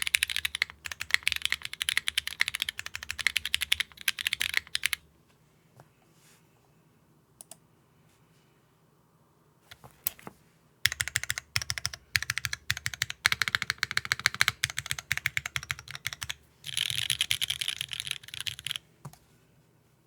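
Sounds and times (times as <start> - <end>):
mechanical keyboard typing: 0.0 - 5.0, 10.9 - 18.8.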